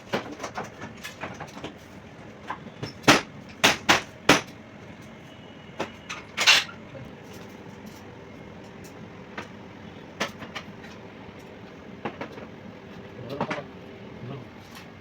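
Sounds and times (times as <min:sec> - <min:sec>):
hard objects knocking and clacking: 0:00.0 - 0:01.8, 0:02.5 - 0:04.6.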